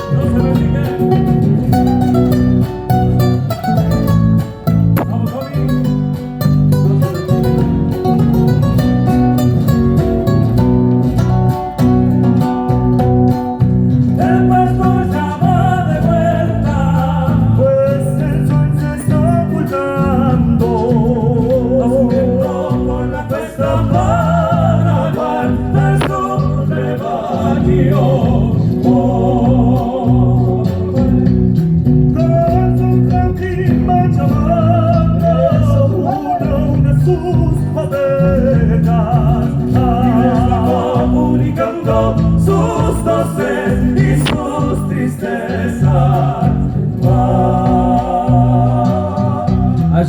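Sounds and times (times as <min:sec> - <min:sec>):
bass rhythm: 0:00.0 - 0:50.0.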